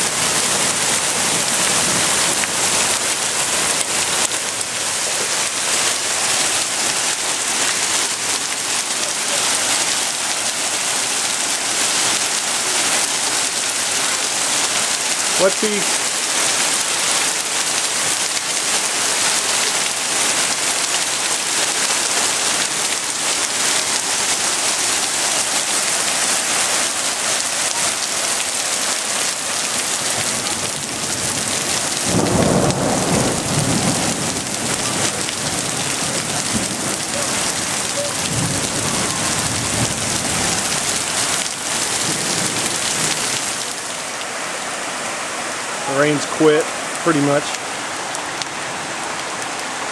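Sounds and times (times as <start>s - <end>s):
heavy rain hissing: 0.0s - 49.9s
thunder rumbling: 30.1s - 43.4s.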